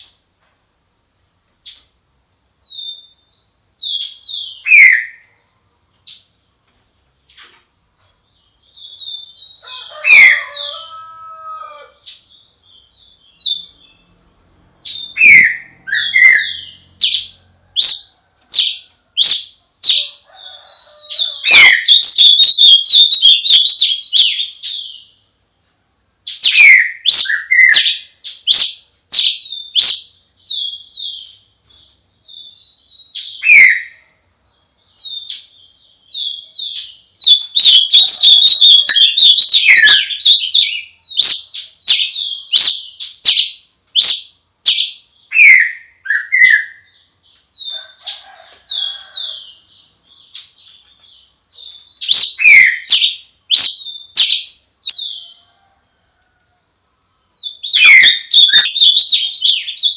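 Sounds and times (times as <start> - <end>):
songbird chirping and chattering: 14.8 - 25.3, 26.2 - 55.6, 57.0 - 59.9.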